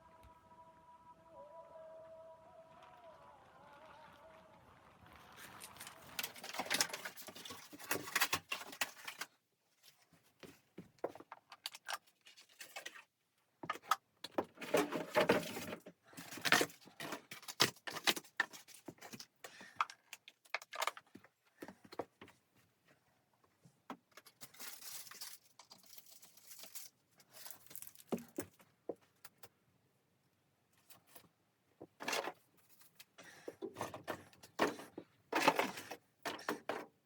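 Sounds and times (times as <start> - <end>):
rustling and crinkling: 5.4 - 29.5, 30.7 - 37.0.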